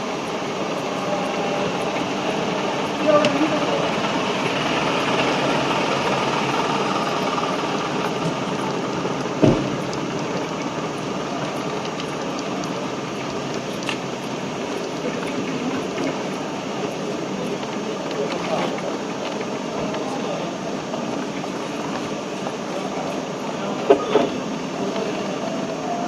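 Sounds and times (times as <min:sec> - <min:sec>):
vehicle engines on city street: 0:00.0 - 0:26.0
brief thump: 0:09.4 - 0:09.8.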